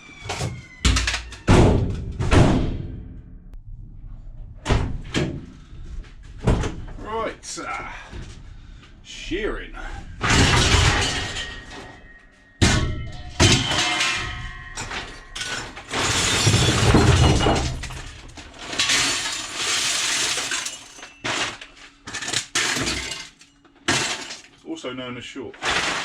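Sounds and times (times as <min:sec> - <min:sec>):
scrap metal clattering and crashing: 0:10.1 - 0:24.6, 0:25.6 - 0:26.0.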